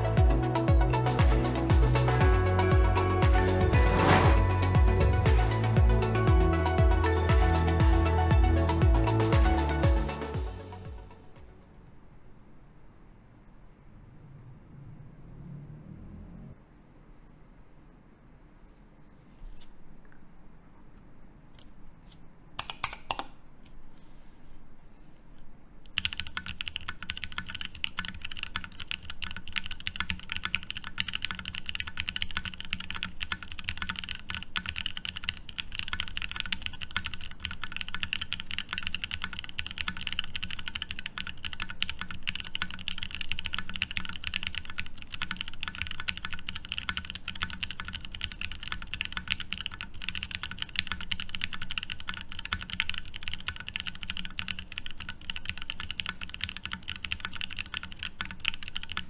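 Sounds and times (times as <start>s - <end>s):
fast typing on mechanical keyboard: 22.6s - 23.3s, 25.9s - 59.0s.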